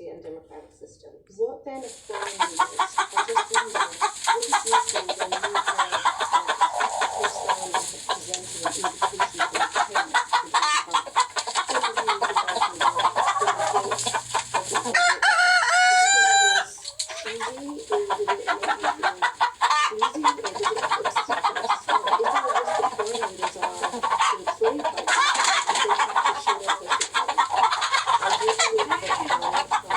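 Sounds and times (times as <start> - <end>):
chickens clucking: 0.0 - 29.9
rooster crowing: 14.9 - 16.8.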